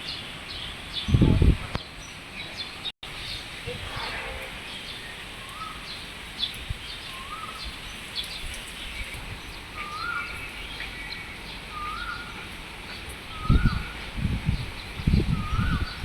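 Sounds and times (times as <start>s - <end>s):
rain hiss: 0.0s - 16.0s.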